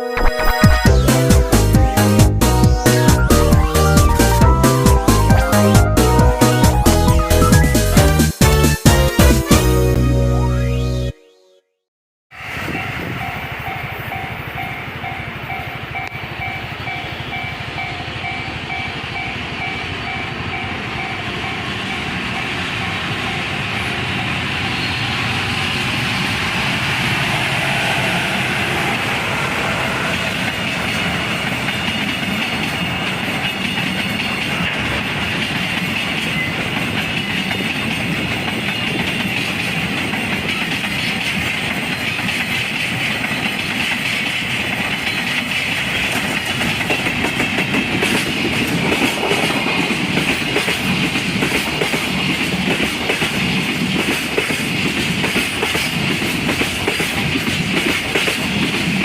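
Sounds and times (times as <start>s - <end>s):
freight train rumbling: 0.9s - 10.0s, 12.3s - 59.0s
wheels clicking over rail joints: 30.4s - 59.0s.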